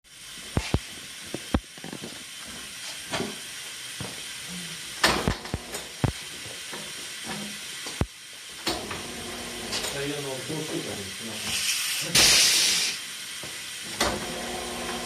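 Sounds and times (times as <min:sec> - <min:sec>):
compressed air hissing: 0:11.0 - 0:13.4.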